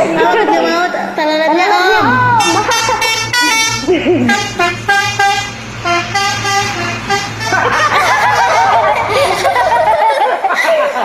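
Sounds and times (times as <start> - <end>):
crowd shouting and cheering: 0.0 - 3.6, 7.6 - 11.0
engine hum: 1.8 - 11.0
bus horn playing a tune: 2.0 - 9.5.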